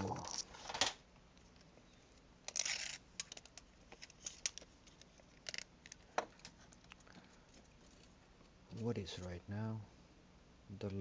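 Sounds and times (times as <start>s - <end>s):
small metal pieces clicking: 2.5s - 4.6s, 5.3s - 6.0s.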